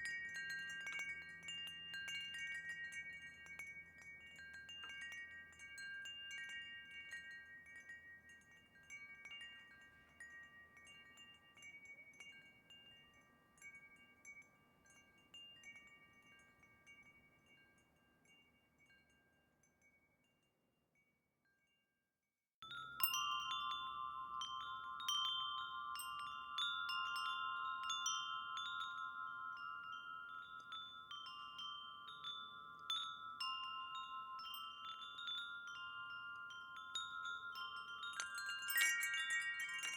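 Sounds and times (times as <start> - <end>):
wind chimes ringing: 0.0 - 21.7, 22.6 - 39.9.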